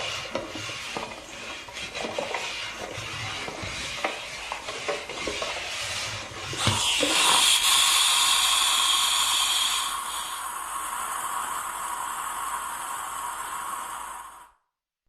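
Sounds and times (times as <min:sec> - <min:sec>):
steam hissing: 0:00.0 - 0:14.6
steam iron thump: 0:06.6 - 0:07.5.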